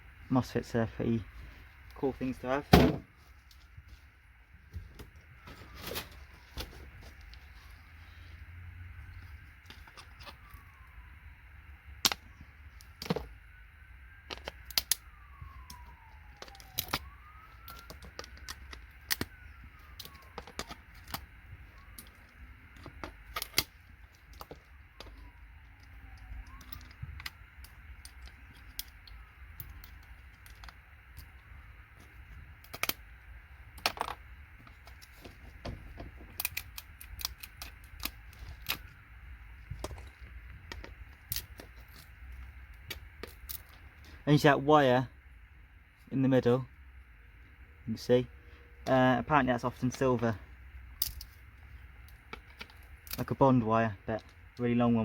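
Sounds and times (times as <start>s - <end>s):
small components dropping: 14.2s - 33.0s, 33.7s - 39.0s, 50.9s - 53.3s.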